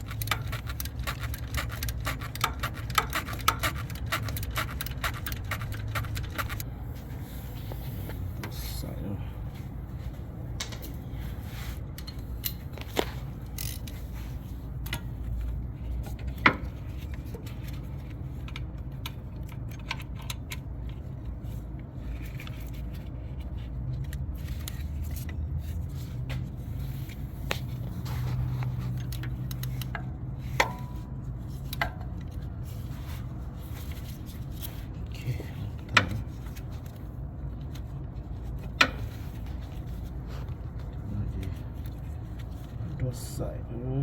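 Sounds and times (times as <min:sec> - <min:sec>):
hand tools clicking and scraping: 0:00.0 - 0:06.6
steady low hum: 0:00.0 - 0:44.0.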